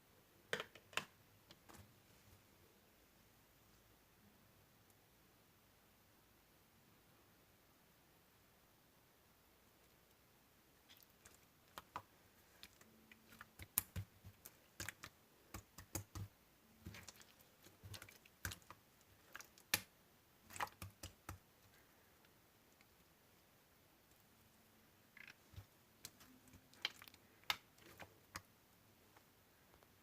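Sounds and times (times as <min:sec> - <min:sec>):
slime squishing with sticky clicks: 0:10.9 - 0:21.6, 0:25.1 - 0:28.5.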